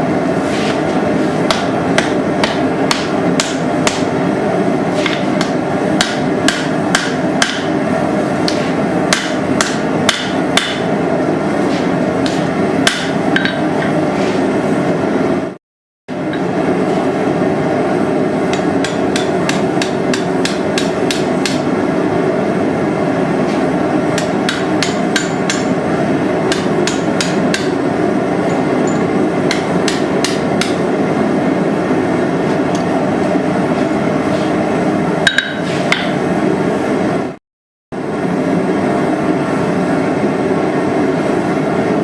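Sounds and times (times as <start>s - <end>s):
gas forge roaring: 0.0s - 37.4s, 38.0s - 42.0s
hammer striking hot steel: 1.4s - 4.2s, 5.0s - 7.8s, 8.4s - 11.0s, 12.2s - 14.0s, 18.5s - 21.7s, 24.2s - 31.0s, 35.2s - 36.2s.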